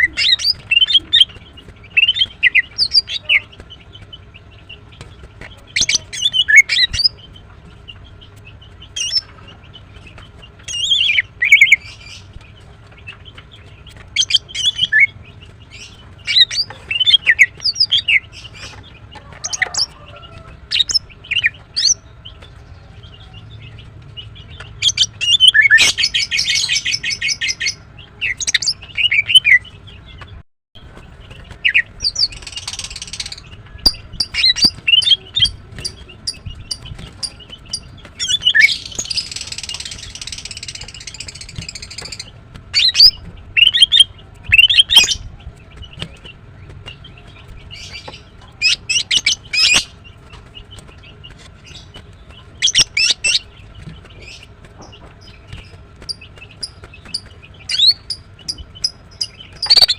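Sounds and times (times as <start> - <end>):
bird chirping and whistling: 0.0 - 3.5, 5.8 - 7.1, 10.7 - 12.0, 24.8 - 29.6, 31.6 - 45.2, 48.6 - 49.9, 52.6 - 53.5, 56.6 - 59.9.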